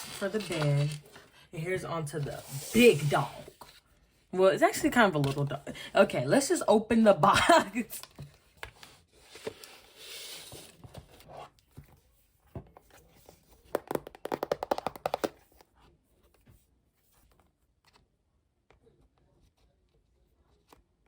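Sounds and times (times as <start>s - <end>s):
cardboard rustling and tearing: 0.0s - 1.2s.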